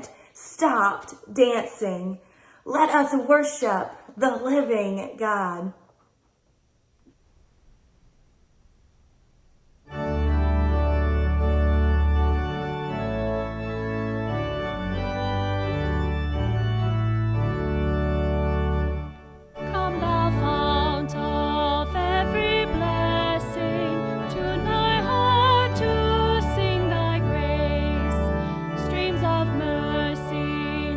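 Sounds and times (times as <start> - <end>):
organ music: 9.8 - 30.9.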